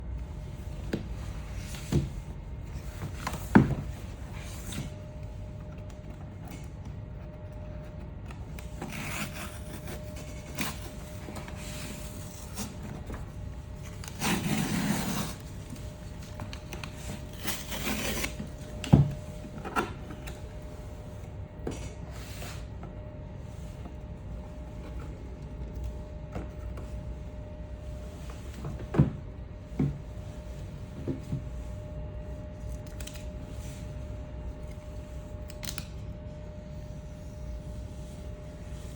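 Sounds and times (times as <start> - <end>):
cardboard rubbing and sliding: 13.9 - 16.3.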